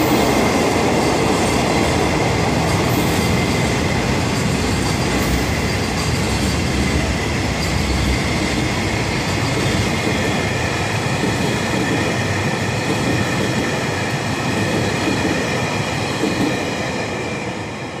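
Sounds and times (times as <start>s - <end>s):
train wheels rumbling on rail: 0.0s - 18.0s.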